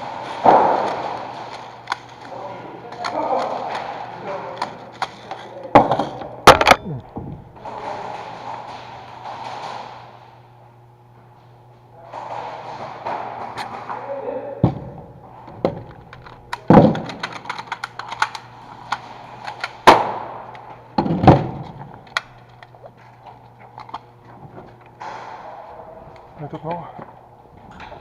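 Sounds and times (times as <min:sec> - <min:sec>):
airsoft guns firing: 0:19.8 - 0:20.4.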